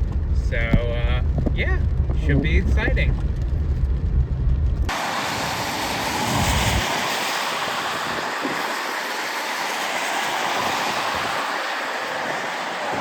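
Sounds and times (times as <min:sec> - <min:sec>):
low rumble: 0:00.0 - 0:08.0.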